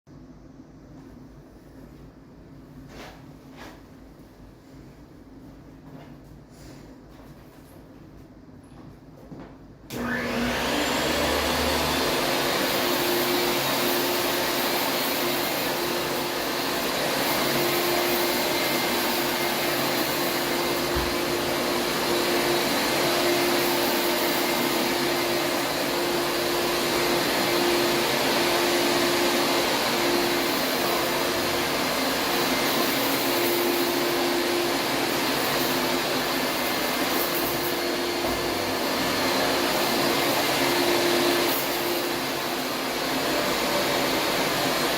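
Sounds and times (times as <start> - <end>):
vacuum cleaner on carpet: 9.9 - 44.9.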